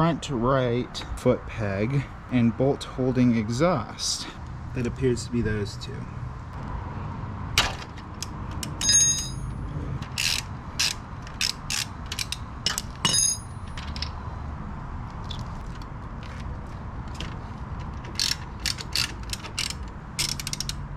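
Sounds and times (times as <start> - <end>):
metal tools clinking: 8.6 - 14.1
socket wrench clicking: 10.1 - 14.2, 17.8 - 20.8.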